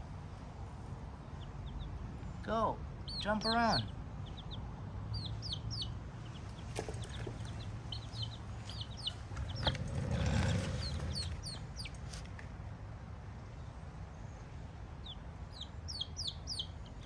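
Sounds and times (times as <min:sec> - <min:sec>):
chicks peeping: 0:03.0 - 0:12.3, 0:15.0 - 0:17.0.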